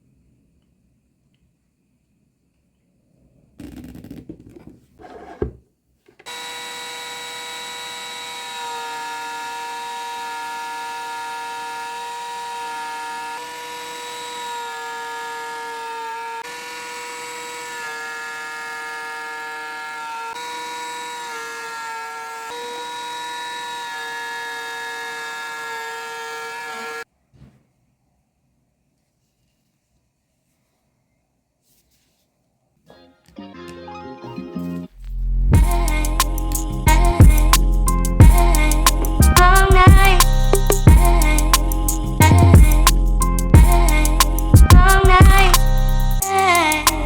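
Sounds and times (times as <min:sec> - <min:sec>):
electric wood router whining: 0:06.2 - 0:27.1
rustling: 0:28.8 - 0:32.8.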